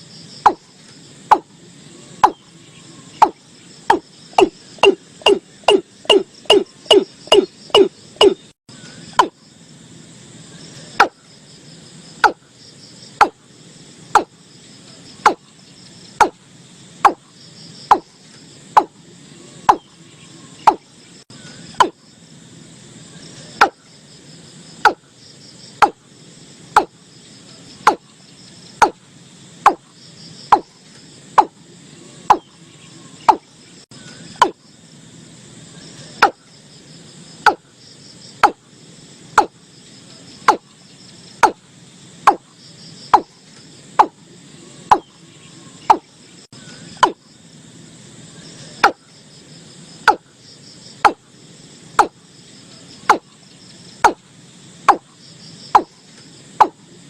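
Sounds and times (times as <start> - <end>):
insects chirping: 0.0 - 57.0
bird calling sharp notes: 1.3 - 9.4.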